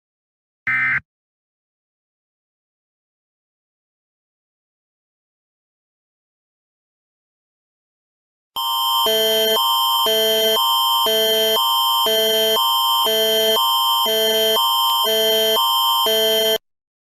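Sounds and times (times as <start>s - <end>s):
alternating alert chords: 9.0s - 16.6s.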